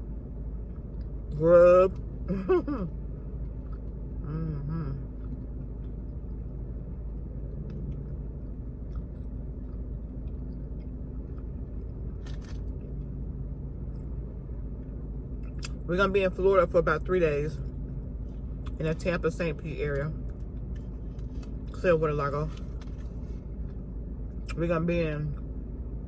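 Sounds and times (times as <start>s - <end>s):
car engine hum: 0.0s - 26.0s
person chewing: 3.4s - 12.6s, 15.4s - 15.8s
person humming: 4.3s - 5.0s.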